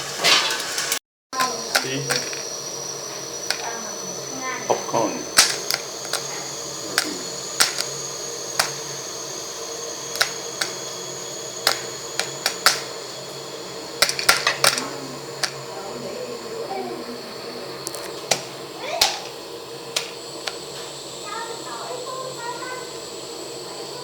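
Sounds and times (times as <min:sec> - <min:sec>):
faint high whine and hum: 0:01.4 - 0:24.0
sharp clicks and knocks: 0:05.4 - 0:08.8, 0:10.1 - 0:10.8, 0:11.6 - 0:13.0, 0:14.0 - 0:15.6.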